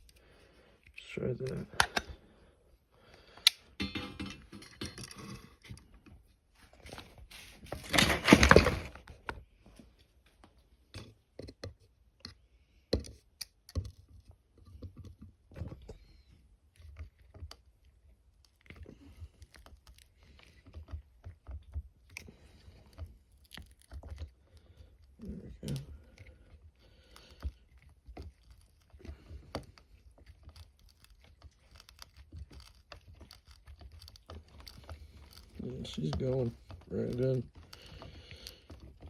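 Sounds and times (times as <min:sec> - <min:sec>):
screwdriver rasping: 0:25.7 - 0:39.0.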